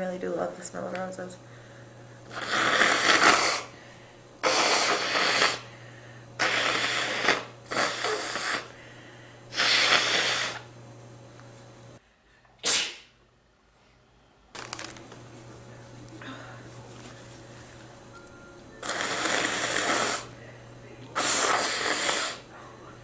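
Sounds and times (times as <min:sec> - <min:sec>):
man sneezing: 0:12.6 - 0:13.1.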